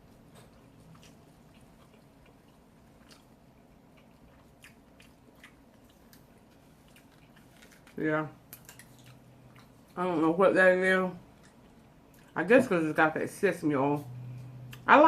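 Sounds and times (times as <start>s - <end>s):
person chewing food: 0.0s - 10.0s, 11.2s - 12.4s.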